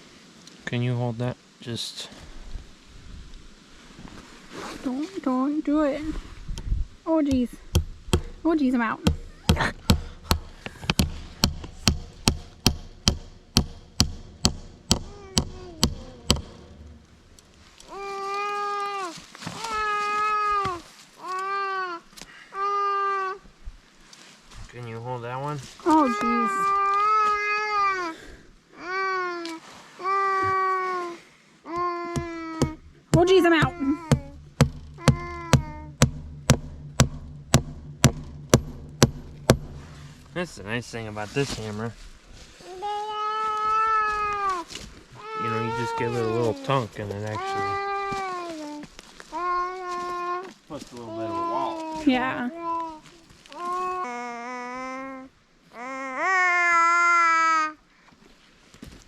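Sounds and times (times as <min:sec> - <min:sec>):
hammer striking wooden post: 0:07.3 - 0:17.5, 0:31.8 - 0:40.4.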